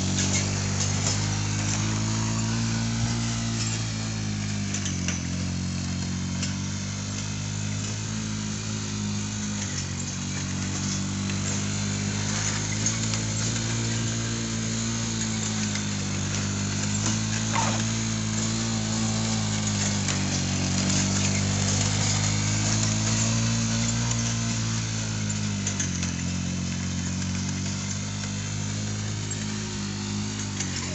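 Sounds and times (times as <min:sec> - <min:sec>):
drive motor running: 0:00.0 - 0:30.9.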